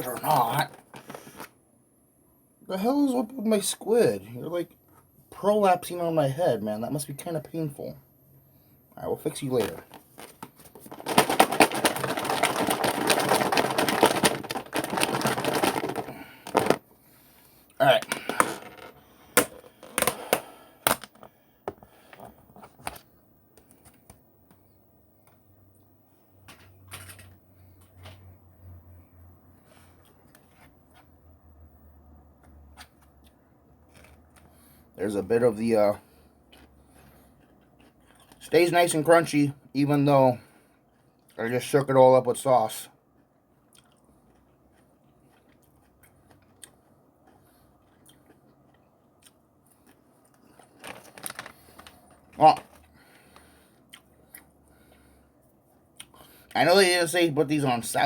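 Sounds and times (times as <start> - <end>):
crunchy chips being chewed: 10.8 - 16.8, 32.8 - 34.6, 36.4 - 38.5, 43.0 - 55.1.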